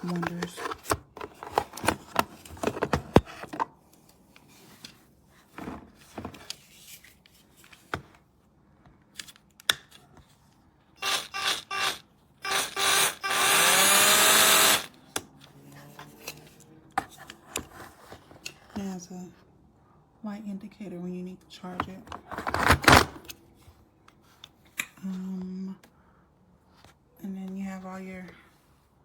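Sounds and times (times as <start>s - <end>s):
cordless drill motor spinning: 11.0s - 15.0s.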